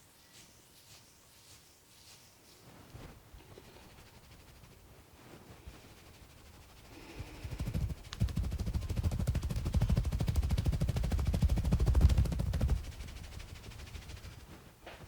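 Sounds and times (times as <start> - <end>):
hands drumming massage strokes: 2.9 - 14.6.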